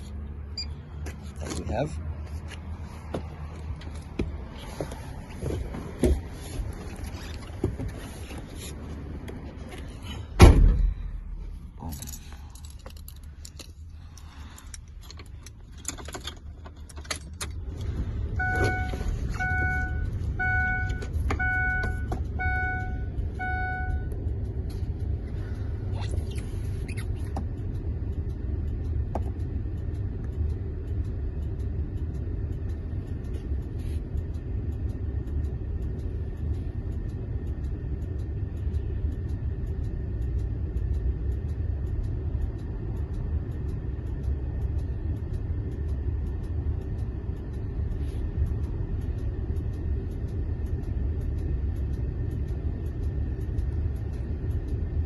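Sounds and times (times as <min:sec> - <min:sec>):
steady low rumble: 0:00.0 - 0:55.0
vehicle warning chime beeping: 0:00.5 - 0:01.0, 0:18.1 - 0:25.9
vehicle door and keys clicking: 0:11.8 - 0:17.7.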